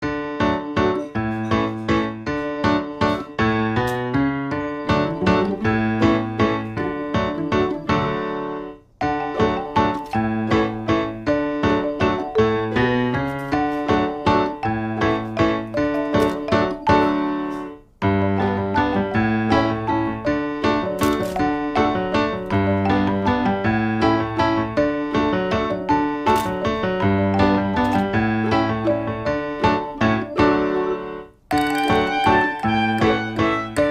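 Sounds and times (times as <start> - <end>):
piano music: 0.0 - 33.9.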